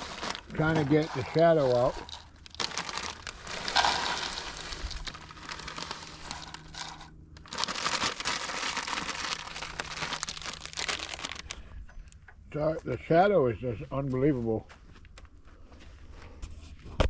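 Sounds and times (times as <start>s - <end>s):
crinkling and rustling: 0.0s - 12.2s.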